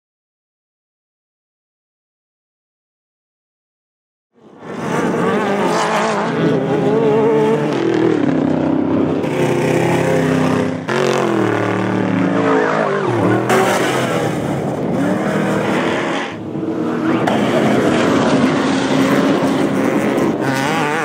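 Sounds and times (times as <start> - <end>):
race vehicle engines revving: 4.4 - 21.0.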